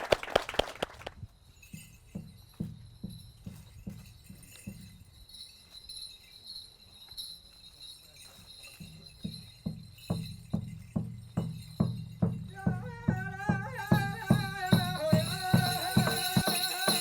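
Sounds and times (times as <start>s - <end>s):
drum beating steadily: 8.8s - 17.0s.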